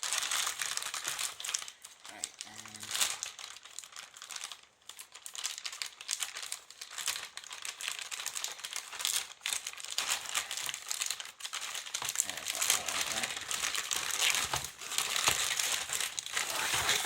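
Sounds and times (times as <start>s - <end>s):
packaging rustling and crinkling: 0.0s - 17.0s.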